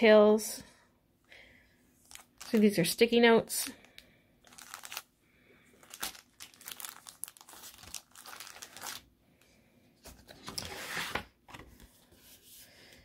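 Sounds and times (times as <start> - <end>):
crinkly packaging rustling: 2.0 - 9.2, 10.0 - 12.1.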